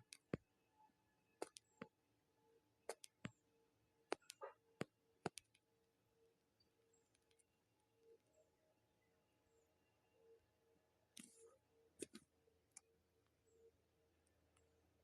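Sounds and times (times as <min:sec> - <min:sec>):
faint sharp clicks: 0:01.4 - 0:01.9.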